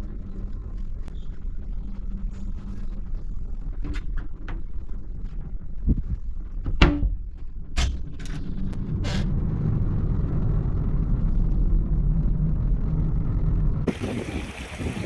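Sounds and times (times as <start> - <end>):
low rumble: 0.0 - 15.0
wind: 0.0 - 15.0
sea noise: 13.9 - 15.0.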